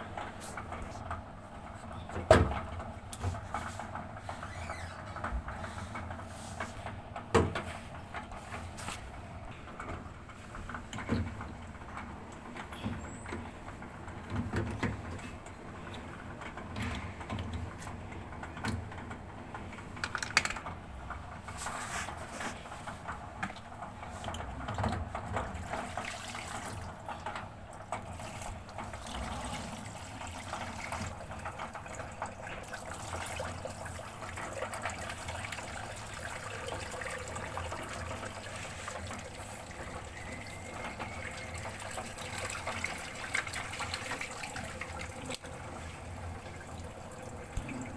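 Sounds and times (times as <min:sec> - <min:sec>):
clicks and knocks: 0:20.0 - 0:20.7.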